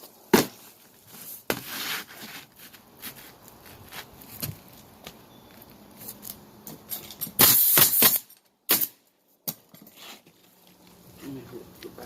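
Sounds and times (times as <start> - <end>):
nail gun shots: 7.4 - 9.0.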